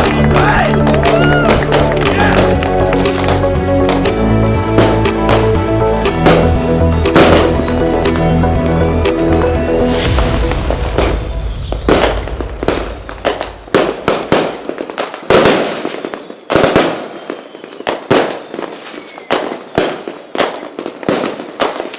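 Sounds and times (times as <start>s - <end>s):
fireworks bangs with crackle: 10.0s - 21.9s.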